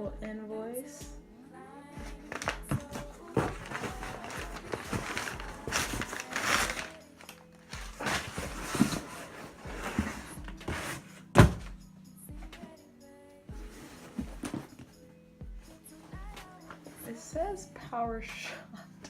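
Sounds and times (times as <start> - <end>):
background music: 0.0 - 19.0
cardboard and paper rustling: 2.0 - 11.6, 13.7 - 15.0.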